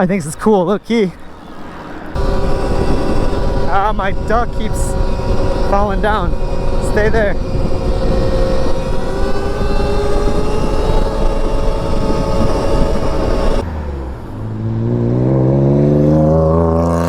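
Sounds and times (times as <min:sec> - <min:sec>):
electric motor whine: 0:01.4 - 0:13.6
tyre noise: 0:01.9 - 0:13.6
wind noise: 0:02.1 - 0:13.7.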